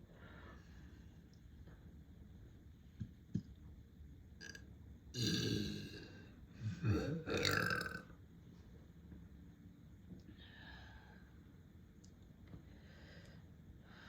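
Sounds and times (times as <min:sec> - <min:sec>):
person burping: 0:05.2 - 0:08.1.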